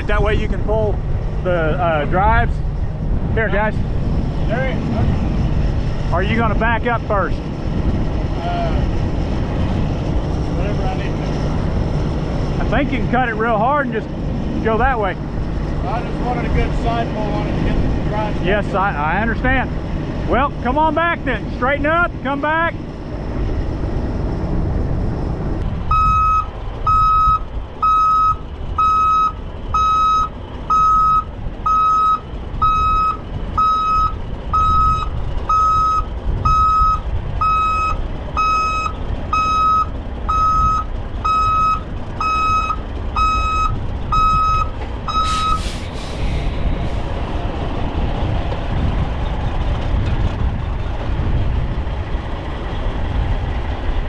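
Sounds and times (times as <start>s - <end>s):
wind rumble on microphone: 0.0s - 54.0s
truck reverse alarm beeping: 25.9s - 45.8s
short sharp hiss: 45.2s - 47.1s.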